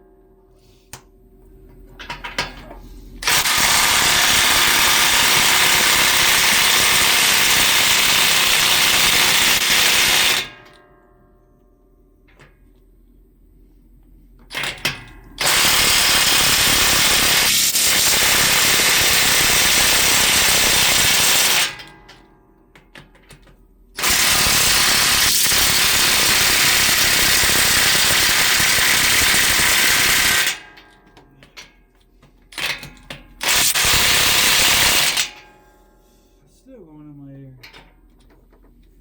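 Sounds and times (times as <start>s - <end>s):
impact wrench hammering: 3.2s - 10.8s, 15.4s - 21.9s, 24.0s - 30.6s, 33.4s - 35.4s.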